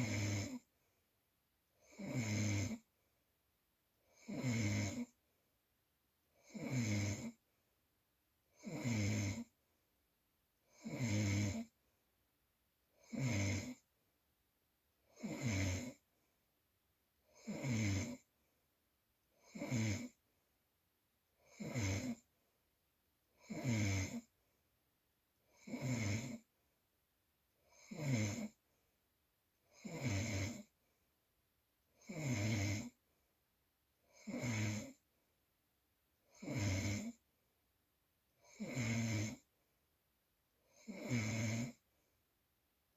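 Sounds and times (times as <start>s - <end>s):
loud snoring: 0.0s - 0.7s, 1.8s - 2.9s, 4.1s - 5.2s, 6.4s - 7.4s, 8.6s - 9.5s, 10.7s - 11.8s, 13.0s - 13.8s, 15.1s - 16.0s, 17.3s - 18.3s, 19.4s - 20.2s, 21.4s - 22.3s, 23.4s - 24.3s, 25.6s - 26.5s, 27.7s - 28.6s, 29.7s - 30.7s, 32.0s - 33.0s, 34.1s - 35.0s, 36.3s - 37.2s, 38.4s - 39.5s, 40.7s - 41.8s.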